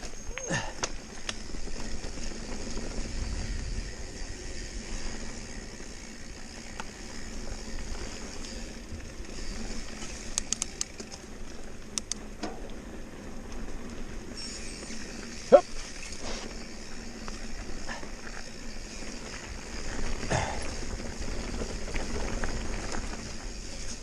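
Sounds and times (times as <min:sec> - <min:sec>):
bike tyres rolling on gravel: 0:00.0 - 0:24.0
sharp clicks: 0:10.3 - 0:11.2, 0:11.9 - 0:12.2.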